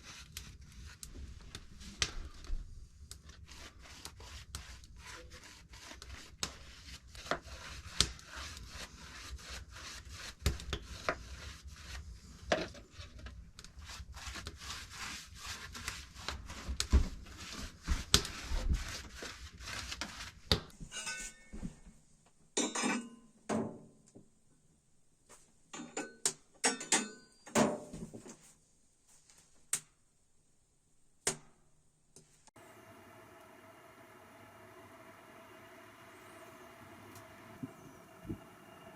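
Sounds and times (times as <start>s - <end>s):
rubbing and scraping on wood: 3.2s - 21.5s.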